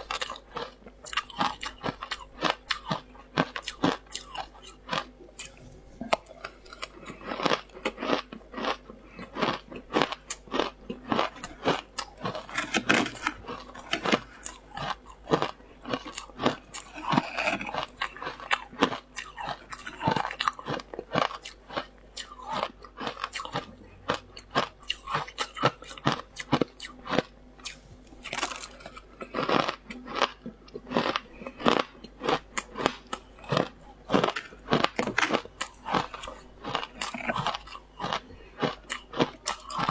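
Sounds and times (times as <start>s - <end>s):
crunching and chewing ice: 0.0s - 39.9s.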